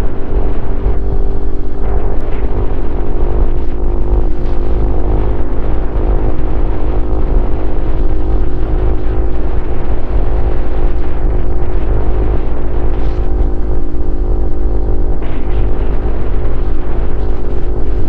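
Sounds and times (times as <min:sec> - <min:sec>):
motorcycle engine running: 0:00.0 - 0:18.0
wind rumble on microphone: 0:00.0 - 0:18.0.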